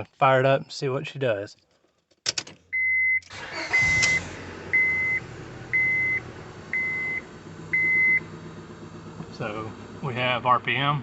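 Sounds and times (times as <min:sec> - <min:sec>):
dashboard warning chime beeping: 0:02.7 - 0:08.3
car engine idling: 0:03.3 - 0:11.0.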